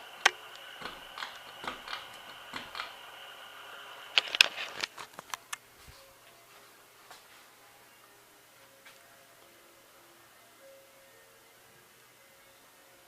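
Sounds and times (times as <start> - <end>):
fan clicks and rattles: 0.0 - 5.7
ceiling fan whine with ticking: 0.0 - 13.0.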